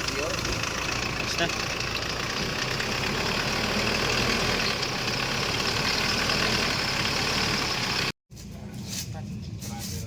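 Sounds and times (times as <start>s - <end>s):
diesel engine idling: 0.0s - 8.2s.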